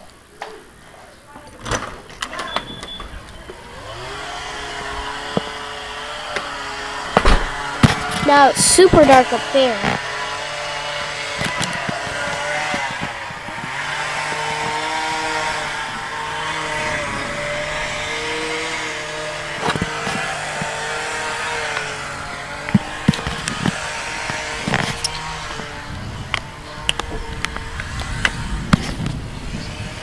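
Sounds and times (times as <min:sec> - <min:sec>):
motor humming: 0:02.5 - 0:30.0
sharp knocks: 0:07.1 - 0:08.3.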